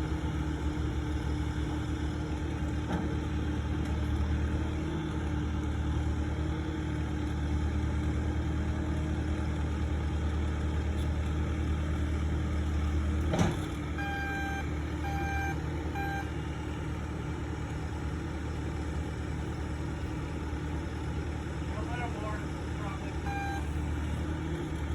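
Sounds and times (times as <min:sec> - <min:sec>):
loader engine running: 0:00.0 - 0:24.9
sharp clunk: 0:13.3 - 0:13.7
reversing alarm beeps: 0:14.0 - 0:16.4, 0:23.2 - 0:23.8.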